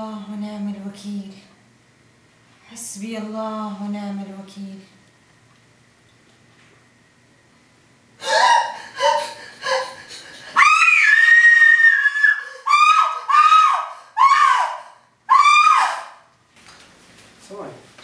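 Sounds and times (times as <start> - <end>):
high-pitched shrieking cries: 8.2 - 16.3.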